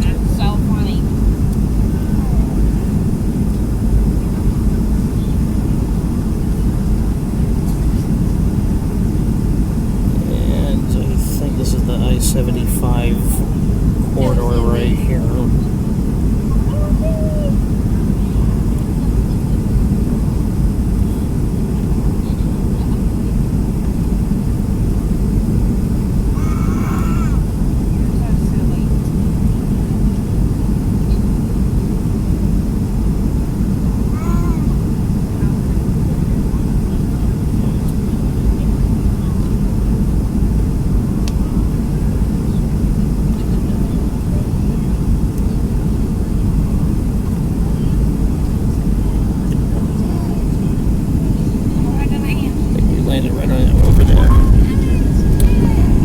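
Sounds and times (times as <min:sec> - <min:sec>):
aircraft cabin engine roar: 0:00.0 - 0:56.0.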